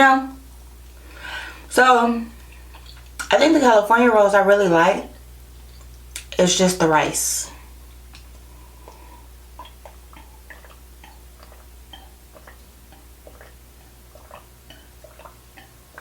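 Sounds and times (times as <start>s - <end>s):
low electrical hum: 0.0s - 16.0s
chewing with wet mouth clicks: 2.4s - 3.3s, 5.6s - 6.4s, 7.9s - 16.0s.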